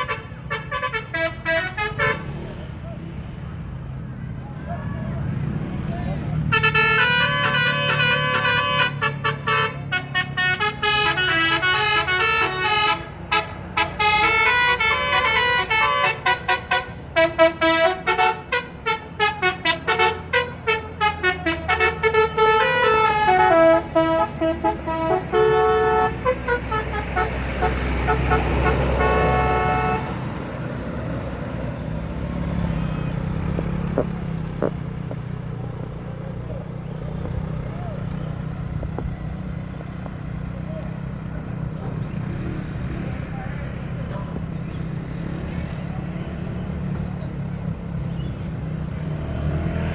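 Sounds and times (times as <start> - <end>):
bus engine running: 0.0 - 49.9
musical air horn tune: 6.5 - 30.2.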